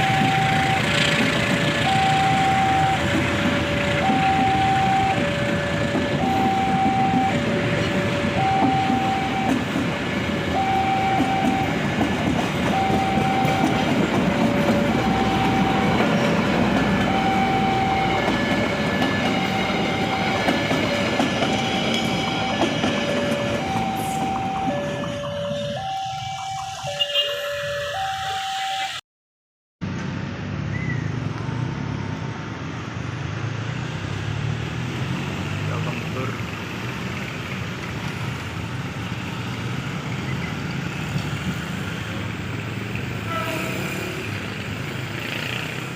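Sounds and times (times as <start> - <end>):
two-tone electronic warning signal: 0.0 - 9.7, 10.4 - 11.8, 12.6 - 16.4, 17.0 - 29.0
train rumbling on rails: 0.0 - 28.5, 29.9 - 45.9.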